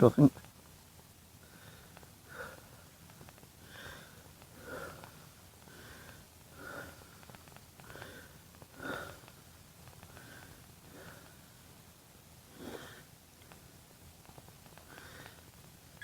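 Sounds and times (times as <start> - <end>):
faint clicks: 3.0 - 3.5, 7.1 - 11.4, 13.4 - 16.0
person breathing heavily: 3.6 - 7.2, 7.9 - 9.3, 12.5 - 13.1.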